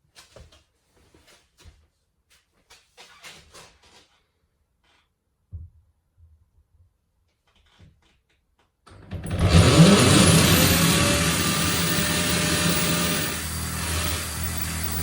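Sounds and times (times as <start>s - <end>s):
electric drill boring into wood: 9.2s - 15.0s.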